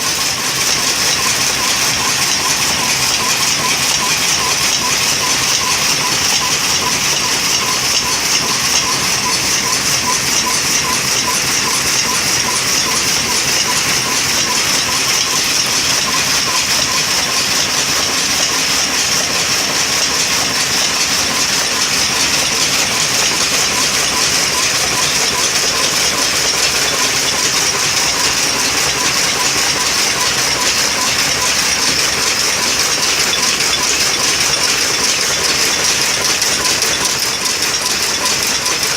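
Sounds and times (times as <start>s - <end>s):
power loom clattering: 0.0s - 38.9s.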